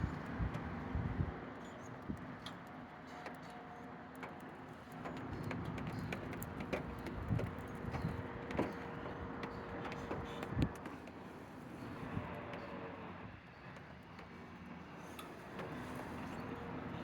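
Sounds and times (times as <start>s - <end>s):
small clicks and knocks: 2.0s - 11.2s.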